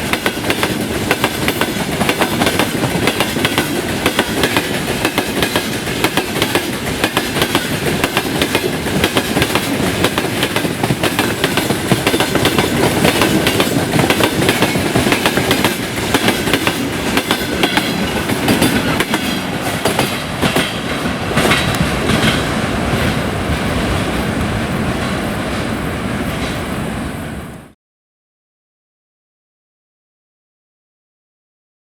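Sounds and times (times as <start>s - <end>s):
train wheels clattering on rails: 0.0s - 26.9s.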